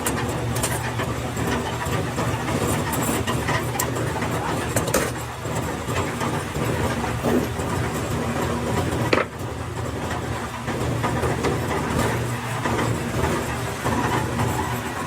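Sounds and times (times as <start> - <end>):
sharp clicks and knocks: 2.5 - 7.6.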